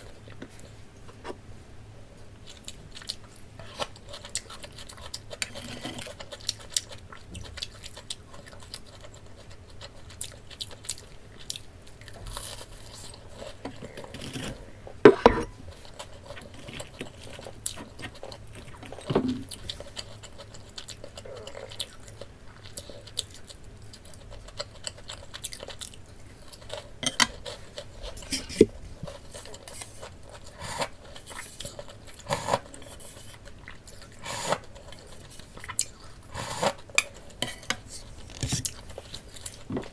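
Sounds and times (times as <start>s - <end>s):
person chewing crunchy food: 2.4s - 39.9s
cutlery clinking on a dish: 15.1s - 15.6s, 27.0s - 27.4s, 37.0s - 38.6s.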